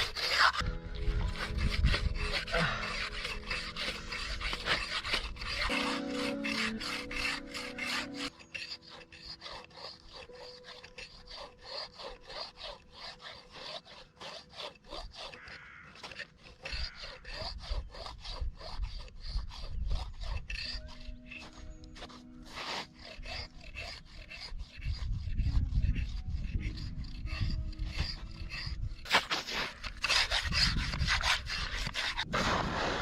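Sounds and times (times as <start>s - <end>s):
hand saw cutting wood: 0.0s - 33.0s
held music notes: 0.6s - 9.7s.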